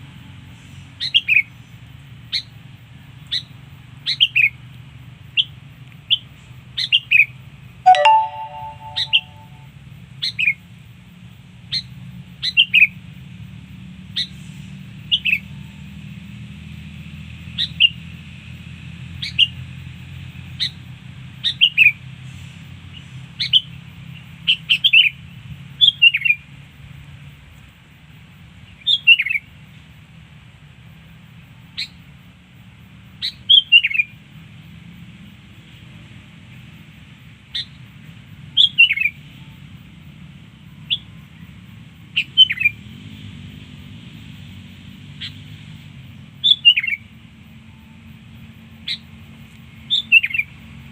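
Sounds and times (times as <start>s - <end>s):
bird chirping: 7.9s - 9.6s
brief pitched tone: 7.9s - 9.6s.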